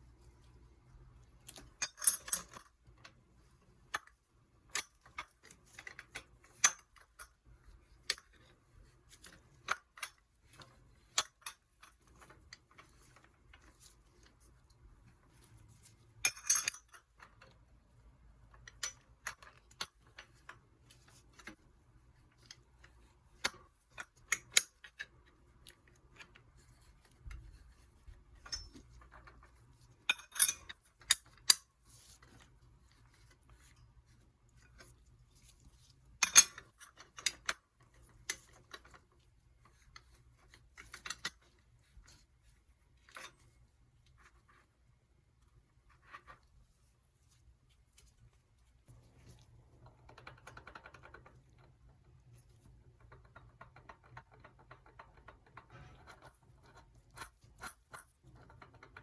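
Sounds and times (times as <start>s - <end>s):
metal tools clinking: 28.4s - 28.9s.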